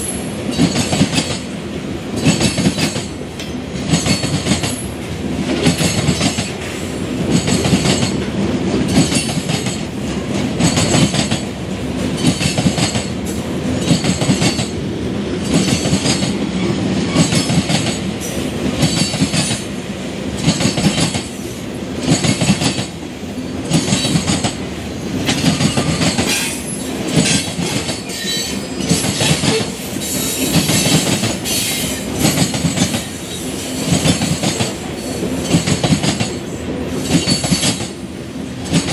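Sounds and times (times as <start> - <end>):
train rolling rumble: 0.0 - 38.9
train wheels clattering over joints: 0.4 - 1.5, 2.1 - 4.9, 5.5 - 6.6, 7.2 - 14.8, 23.6 - 38.0.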